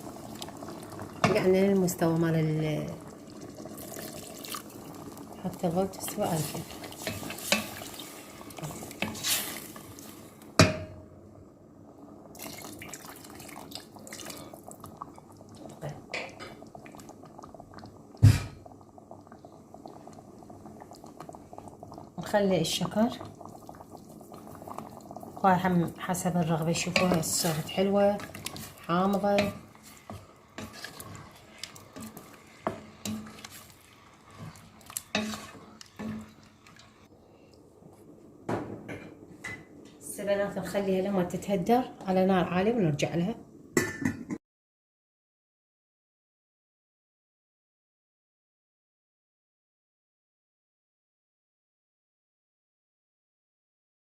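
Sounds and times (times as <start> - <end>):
water splashing into a pot: 0.0 - 11.1, 12.3 - 37.1
spoon scraping a cooking pot: 6.1 - 9.8, 26.8 - 37.0.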